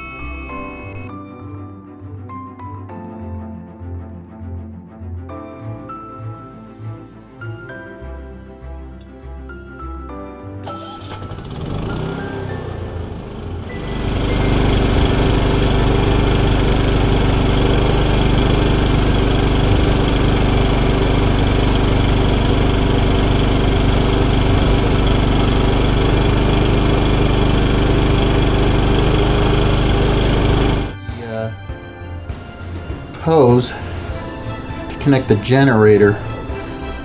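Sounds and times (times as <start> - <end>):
generator engine droning: 10.6 - 31.0, 31.7 - 37.0.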